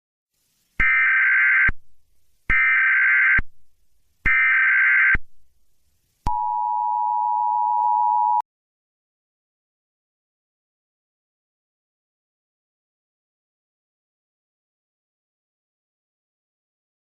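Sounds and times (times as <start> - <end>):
data tone bursts: 6.3 - 8.4
two-tone attention signal: 6.3 - 8.4.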